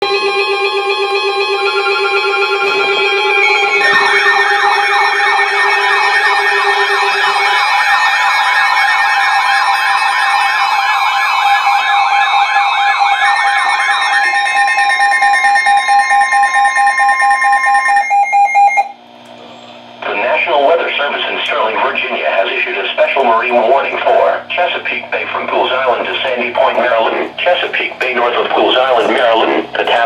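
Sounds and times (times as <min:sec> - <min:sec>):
steady alert tones: 0:00.0 - 0:18.9
electronic siren warbling: 0:00.0 - 0:19.0.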